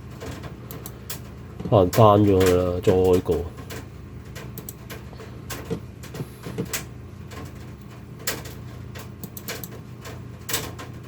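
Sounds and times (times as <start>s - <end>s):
steady low hum: 0.0s - 11.0s
computer mouse clicking: 0.7s - 1.2s, 4.6s - 4.9s, 8.2s - 9.8s.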